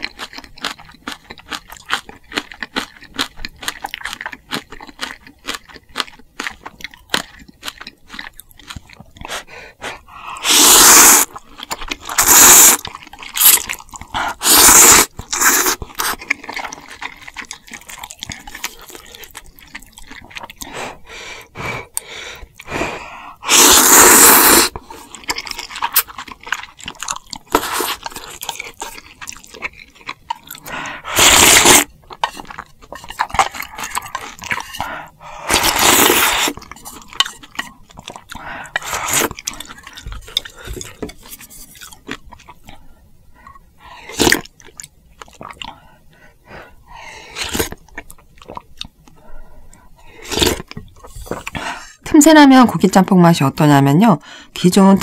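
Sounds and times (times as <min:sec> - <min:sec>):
chewing: 0:00.0 - 0:22.8, 0:24.6 - 0:51.9
slurping noodles: 0:09.2 - 0:29.0, 0:30.5 - 0:41.1, 0:44.0 - 0:44.5, 0:50.1 - 0:51.9.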